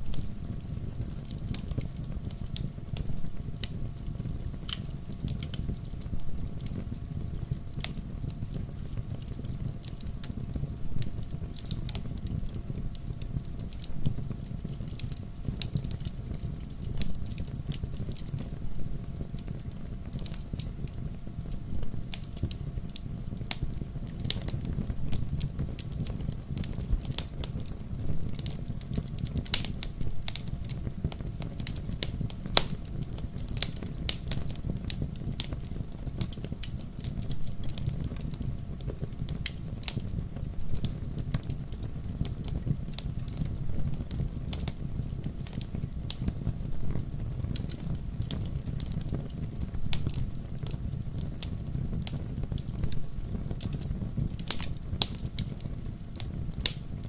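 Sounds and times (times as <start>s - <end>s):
bonfire flames rumbling: 0.0s - 57.0s
fire crackling and popping: 0.0s - 57.0s.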